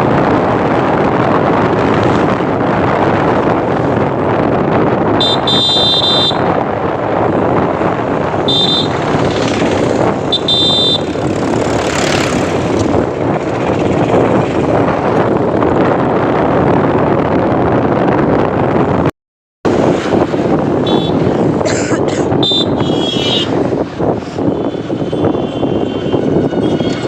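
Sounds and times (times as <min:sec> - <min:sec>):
moving passenger train: 0:21.1 - 0:27.0.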